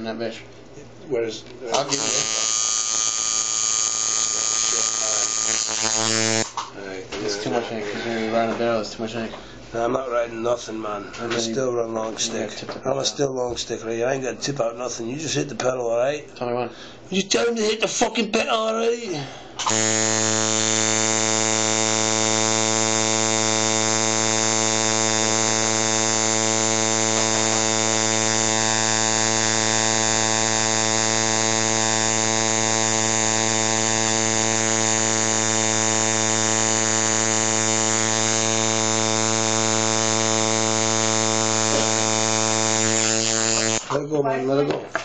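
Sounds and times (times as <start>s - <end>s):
tattoo machine buzzing: 1.7s - 6.7s, 19.6s - 43.9s.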